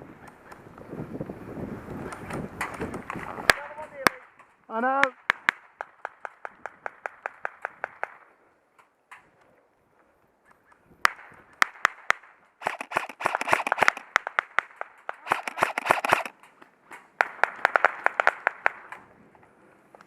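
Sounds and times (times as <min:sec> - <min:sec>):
airsoft guns firing: 0:11.0 - 0:19.0.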